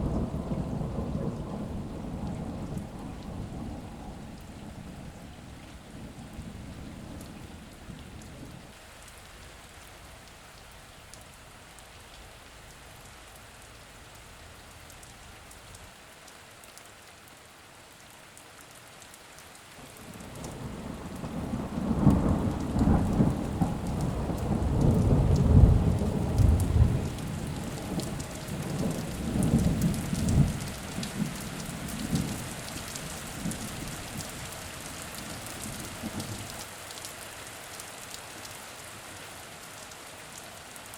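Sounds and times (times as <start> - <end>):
thunder rumbling: 0.0 - 8.7, 20.2 - 34.4
steady rain falling: 0.0 - 40.9.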